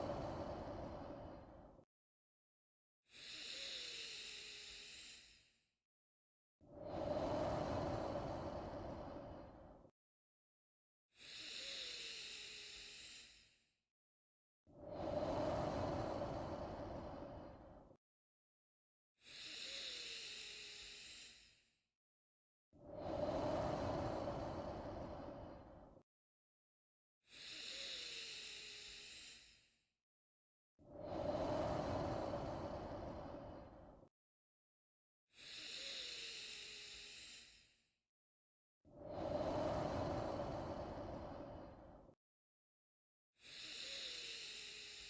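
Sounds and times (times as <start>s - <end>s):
slow human breathing: 0.0s - 1.9s, 3.1s - 5.6s, 6.7s - 9.9s, 11.2s - 13.7s, 14.8s - 18.0s, 19.2s - 21.8s, 22.8s - 26.0s, 27.3s - 29.8s, 30.9s - 34.1s, 35.4s - 37.9s, 38.9s - 42.2s, 43.4s - 45.0s.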